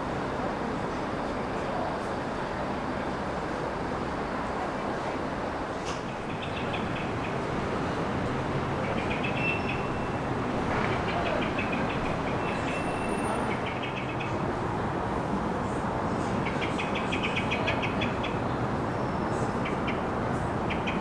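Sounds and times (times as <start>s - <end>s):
small birds chirping: 6.1s - 7.5s, 8.6s - 14.6s, 15.7s - 21.0s.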